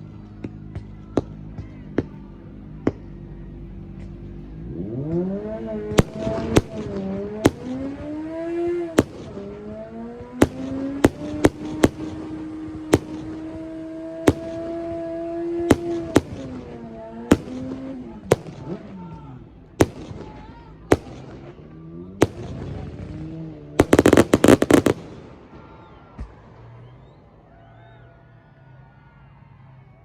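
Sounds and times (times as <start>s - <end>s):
fireworks bangs: 5.4s - 27.2s.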